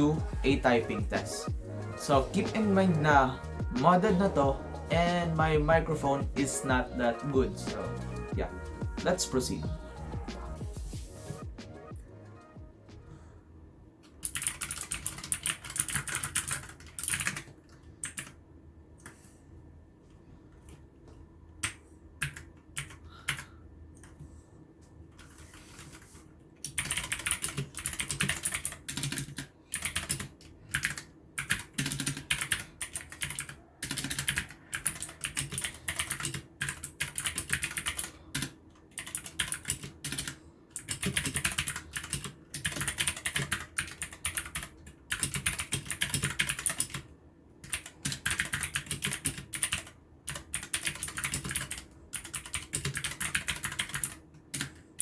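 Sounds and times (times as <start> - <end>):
mechanical keyboard typing: 14.2 - 18.4, 21.6 - 24.2, 26.6 - 47.0, 47.6 - 55.0.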